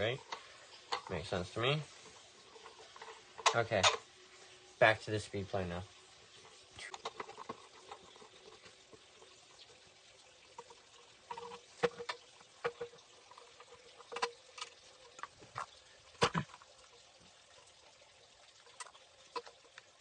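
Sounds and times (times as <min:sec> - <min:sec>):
faint steady hum: 0:00.0 - 0:20.0
scooter parts clicking and knocking: 0:06.8 - 0:08.8, 0:11.3 - 0:16.6.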